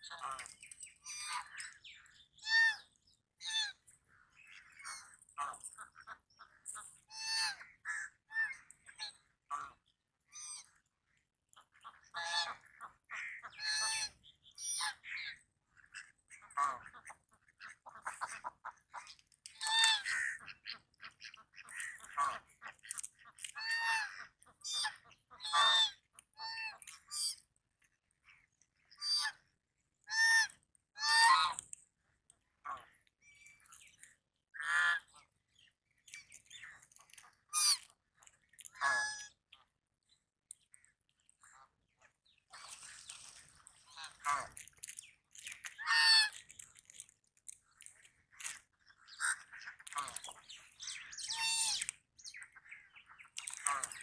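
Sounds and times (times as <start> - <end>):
goose honking: 19.6 - 26.9, 30.2 - 31.6, 38.7 - 39.3, 43.9 - 44.6, 45.7 - 46.4.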